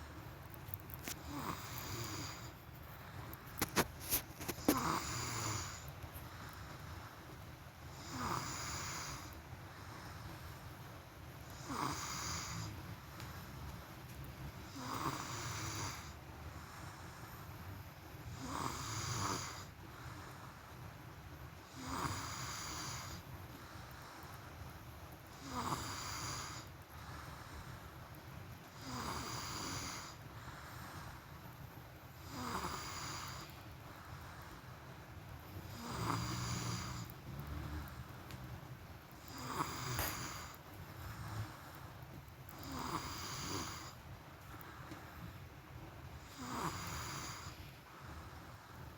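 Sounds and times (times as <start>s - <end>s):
person snoring: 1.2s - 2.5s, 4.6s - 5.8s, 7.9s - 9.3s, 11.6s - 12.7s, 35.7s - 38.0s, 39.2s - 41.6s, 42.6s - 44.0s, 46.3s - 47.6s.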